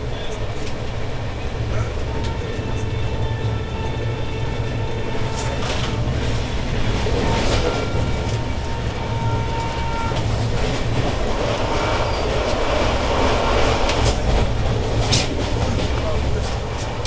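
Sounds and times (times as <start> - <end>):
train wheels rumbling on rails: 0.0 - 17.0.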